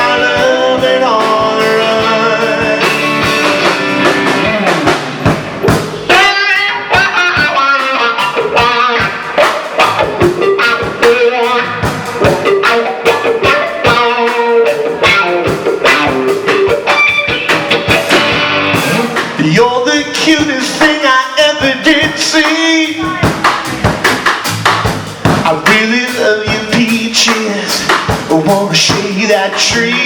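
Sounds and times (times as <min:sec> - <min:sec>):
drum kit beat: 0:00.0 - 0:30.0
electric guitar line: 0:00.0 - 0:30.0.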